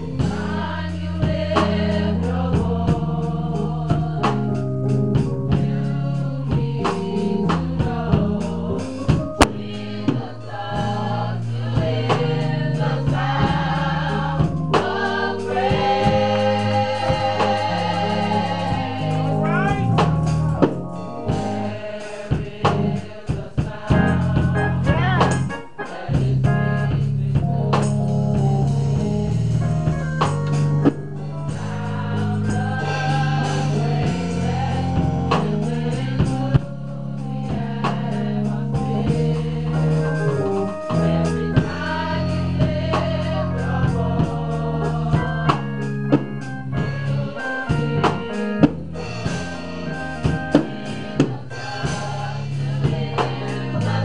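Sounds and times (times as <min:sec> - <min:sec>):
choir singing: 0:00.0 - 0:27.8, 0:31.2 - 0:48.4, 0:49.2 - 0:54.0
organ chords: 0:00.0 - 0:54.0
drum strikes: 0:06.6 - 0:36.7, 0:47.1 - 0:54.0.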